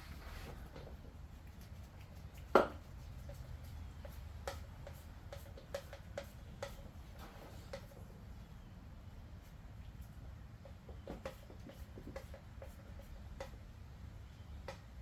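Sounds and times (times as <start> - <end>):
light clicks and taps of tools: 4.1 - 8.0.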